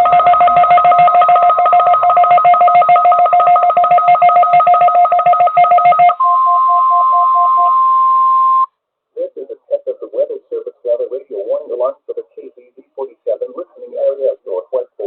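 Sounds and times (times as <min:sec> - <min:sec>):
rapid two-tone electronic beeping: 0:00.0 - 0:07.8
steady alarm tone: 0:00.0 - 0:08.7.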